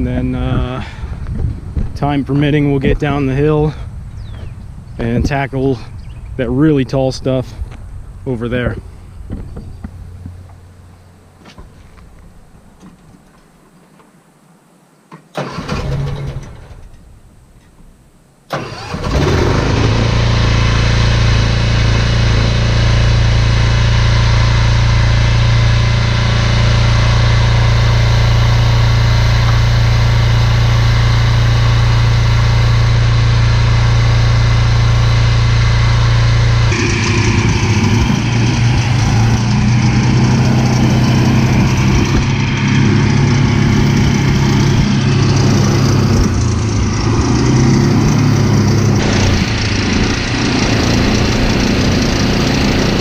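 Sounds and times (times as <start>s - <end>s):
mower engine starting and running: 15.4s - 17.0s, 18.5s - 53.0s.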